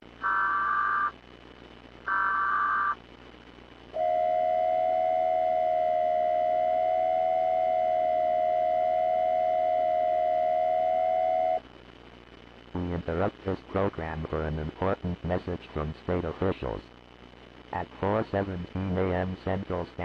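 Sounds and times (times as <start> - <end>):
buzzy data tone bursts: 0.0 - 1.4, 2.0 - 3.1, 3.9 - 11.8.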